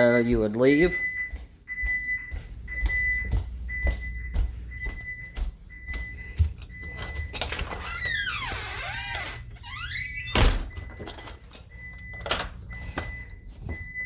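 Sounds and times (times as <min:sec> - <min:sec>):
alarm keypad beeps: 0:00.0 - 0:07.5, 0:10.2 - 0:14.0
door hinges creaking: 0:07.3 - 0:11.3
door shutting thud: 0:10.2 - 0:10.8.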